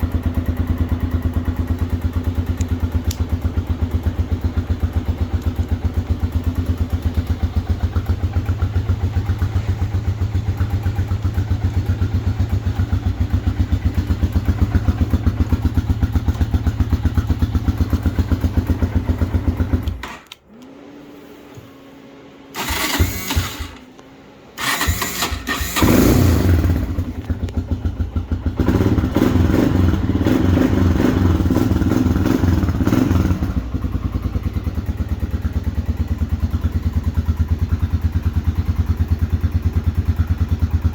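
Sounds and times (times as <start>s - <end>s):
atv engine idling: 0.0s - 20.0s, 24.6s - 40.9s
starter cranking: 22.6s - 23.8s, 24.6s - 26.3s.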